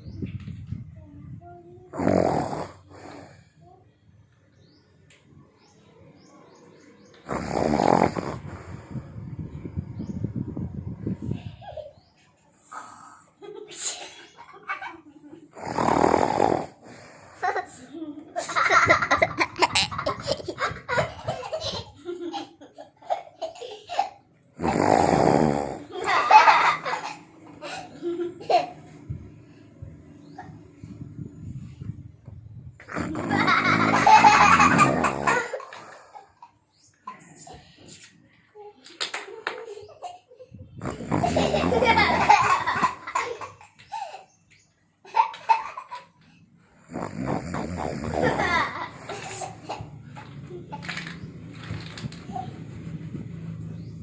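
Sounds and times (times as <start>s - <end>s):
children laughing and giggling: 10.8s - 15.7s, 16.7s - 24.8s, 25.7s - 54.0s.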